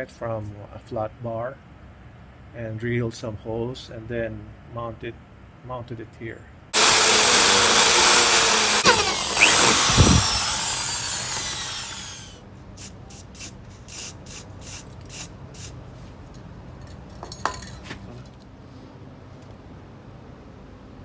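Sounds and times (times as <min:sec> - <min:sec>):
power tool whine spinning down: 0:06.8 - 0:12.4.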